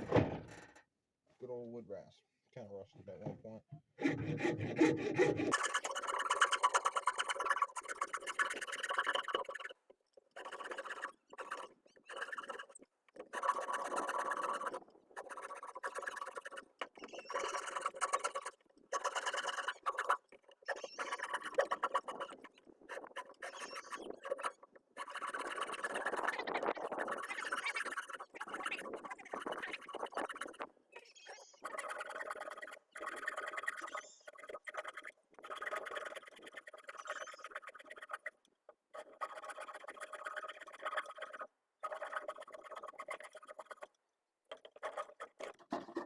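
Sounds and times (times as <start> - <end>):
wood rasp scraping wood: 4.0 - 5.7.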